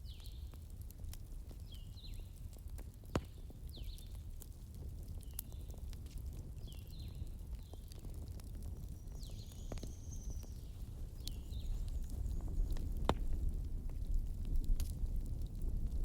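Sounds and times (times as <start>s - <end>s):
small birds chirping: 0.0s - 0.6s, 1.5s - 2.4s, 3.2s - 4.2s, 5.1s - 6.0s, 6.6s - 13.4s
wood fire rumbling and crackling: 0.0s - 16.0s.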